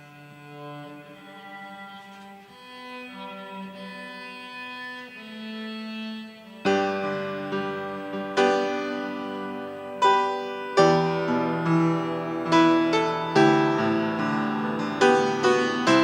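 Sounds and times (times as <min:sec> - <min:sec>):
cello playing slow hymn melody: 0:00.0 - 0:16.0
piano accompaniment: 0:00.0 - 0:16.0
loud piano chord: 0:06.7 - 0:16.0.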